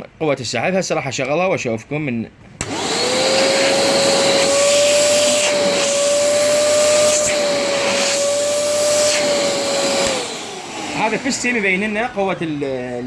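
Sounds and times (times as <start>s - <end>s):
vacuum cleaner running: 2.6s - 13.0s.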